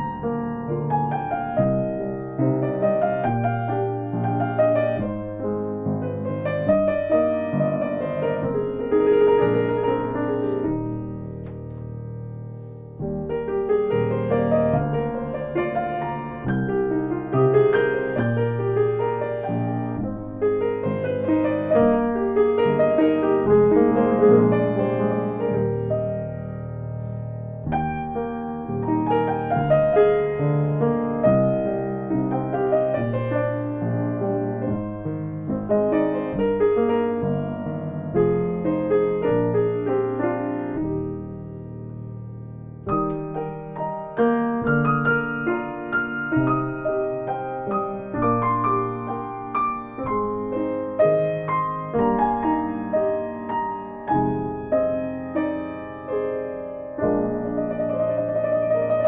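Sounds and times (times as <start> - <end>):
piano playing: 0.0 - 59.0.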